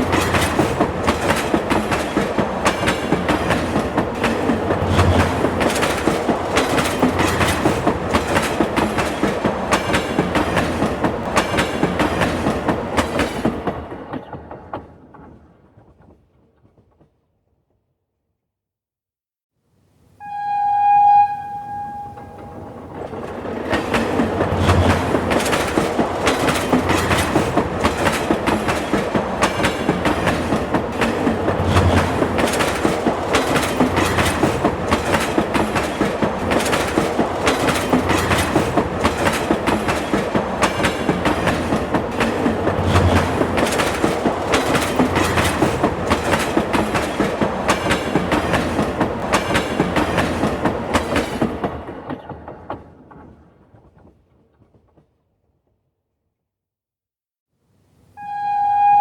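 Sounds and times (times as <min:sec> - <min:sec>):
train rumble: 0:00.0 - 0:16.2, 0:21.2 - 0:55.1
train wheels clickety-clack: 0:00.0 - 0:17.3, 0:22.3 - 0:55.4
brief high tone: 0:20.2 - 0:23.0, 0:58.2 - 0:59.0.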